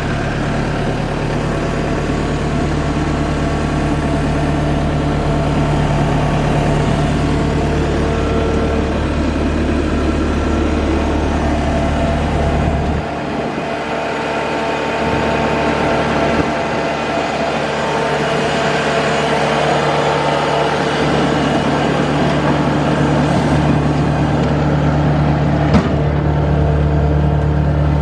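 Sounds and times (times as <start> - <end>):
deep low rumble: 0.0 - 13.7
diesel engine running: 0.0 - 28.0.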